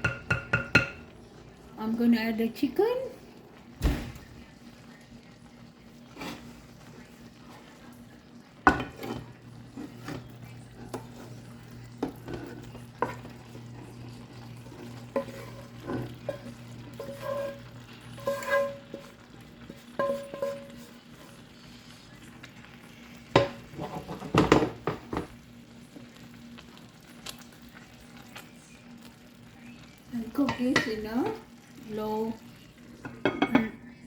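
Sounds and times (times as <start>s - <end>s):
spoon knocking and scraping pot: 0.0s - 1.1s, 8.6s - 21.4s, 23.3s - 25.4s, 33.0s - 33.8s
faint cooking sizzle: 0.0s - 34.0s.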